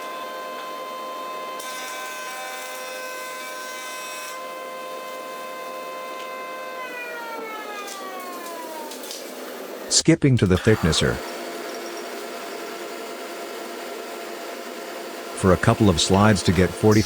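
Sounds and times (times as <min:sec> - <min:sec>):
surface planer whining: 0:00.0 - 0:17.0
planer cutting wood hiss: 0:08.3 - 0:17.0.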